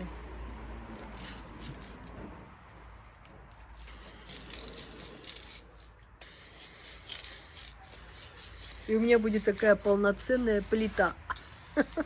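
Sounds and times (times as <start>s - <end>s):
spray paint can hissing: 1.1s - 2.0s, 3.8s - 12.0s.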